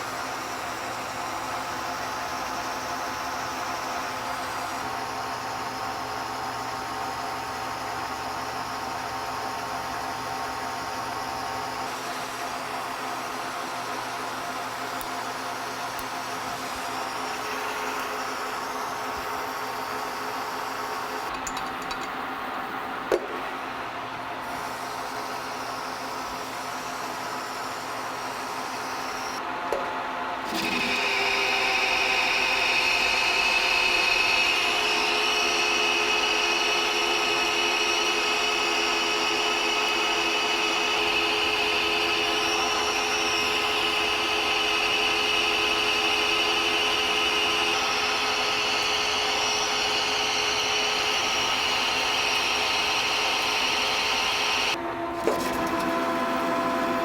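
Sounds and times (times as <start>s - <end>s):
metal-cutting machine running: 30.4s - 57.0s.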